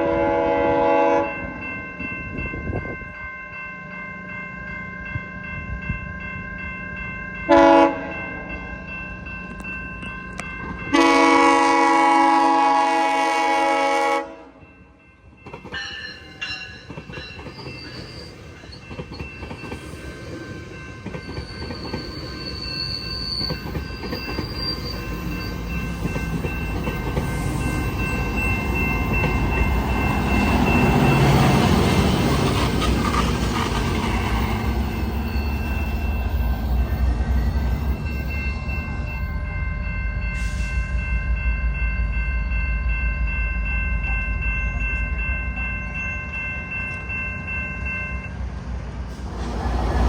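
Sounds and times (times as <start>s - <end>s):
train horn chord: 0.0s - 1.5s, 7.5s - 8.2s, 10.9s - 14.6s
train rumbling on rails: 0.0s - 50.0s
high wheel squeals: 17.3s - 19.0s, 21.2s - 39.4s.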